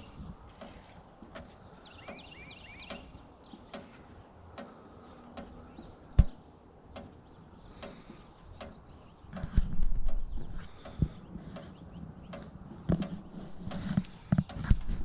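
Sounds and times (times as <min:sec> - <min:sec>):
heavy thump: 0:06.2 - 0:06.4.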